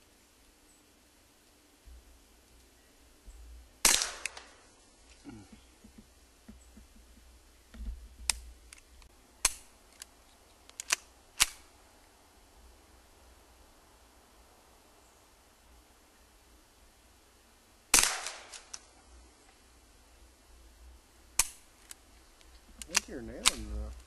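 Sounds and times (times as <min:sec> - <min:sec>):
suppressed pistol shots: 0:03.8 - 0:04.6, 0:09.4 - 0:09.7, 0:10.7 - 0:11.7, 0:17.9 - 0:18.8
faint metallic clicks: 0:05.2 - 0:11.6, 0:21.4 - 0:24.0.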